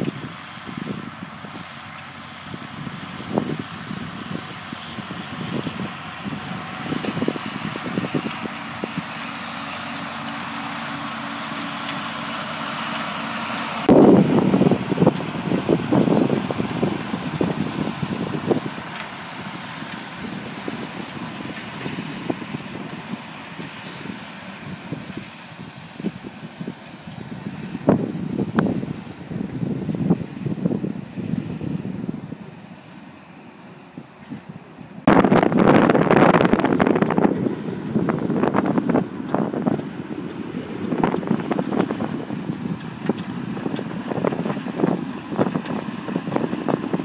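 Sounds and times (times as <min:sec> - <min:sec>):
tractor engine running: 0:00.0 - 0:47.0.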